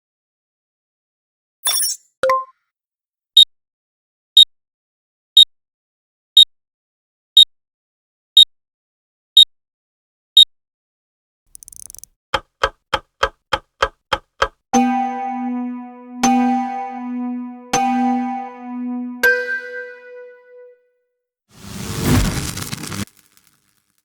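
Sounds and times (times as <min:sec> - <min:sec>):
quick run of clicks: 0:11.5 - 0:14.6
clock ticking: 0:11.6 - 0:14.6
faint brief hiss: 0:21.6 - 0:23.9.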